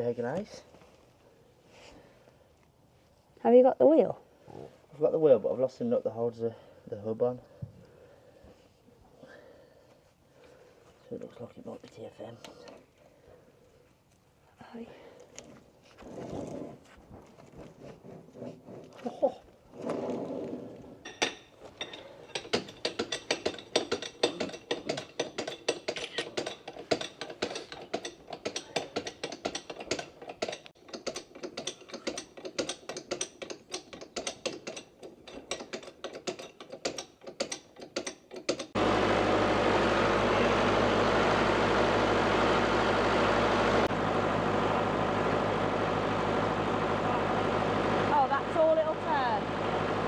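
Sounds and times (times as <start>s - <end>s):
tractor engine running: 38.8s - 50.0s.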